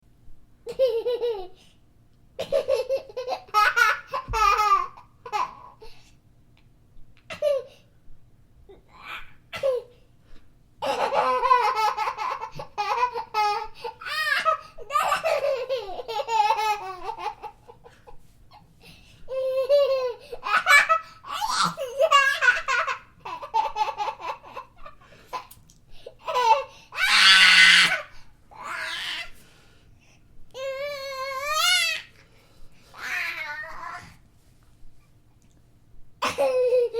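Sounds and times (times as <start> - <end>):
boy laughing: 10.8 - 18.2, 19.3 - 25.6.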